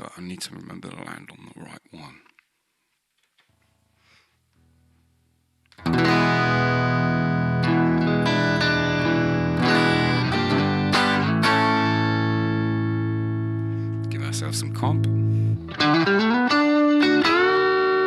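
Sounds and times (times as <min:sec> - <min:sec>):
electric guitar strumming chords: 0:05.8 - 0:18.0.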